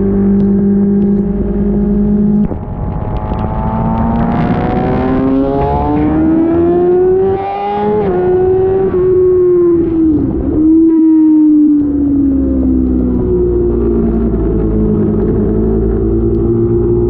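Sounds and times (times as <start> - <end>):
motorcycle engine accelerating: 0.0 - 17.0.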